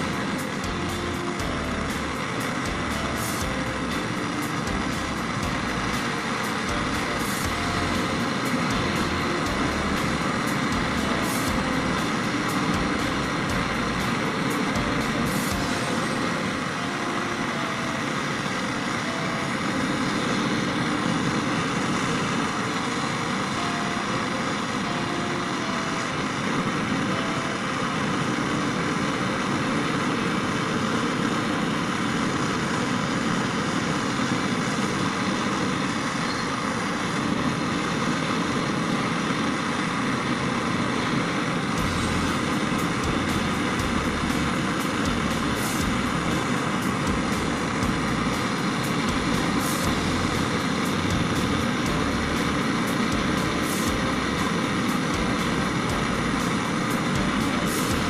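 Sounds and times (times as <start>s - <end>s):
torch flame hissing: 0.0s - 58.0s.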